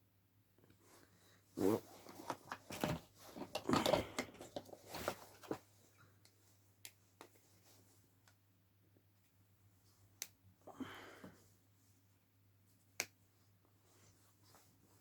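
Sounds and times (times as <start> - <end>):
knocks and rattles of handling: 2.0 - 5.7.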